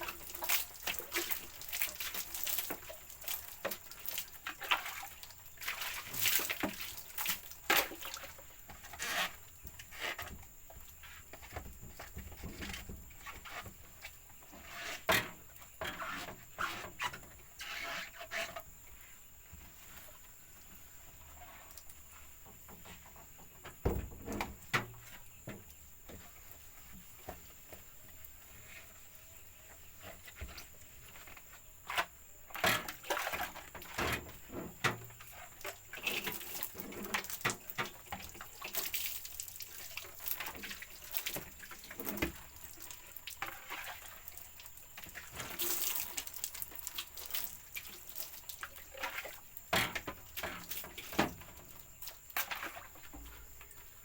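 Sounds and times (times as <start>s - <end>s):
water splashing: 0.0s - 8.4s.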